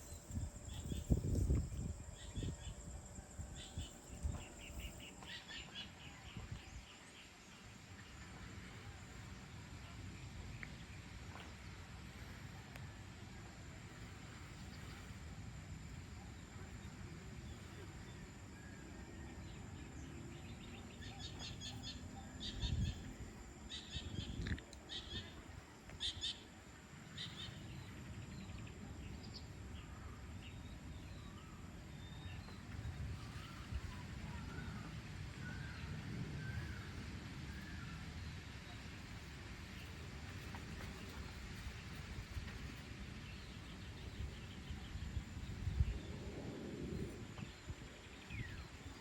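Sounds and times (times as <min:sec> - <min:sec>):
high insect drone: 0:00.0 - 0:06.0
steady outdoor hiss: 0:00.0 - 0:49.0.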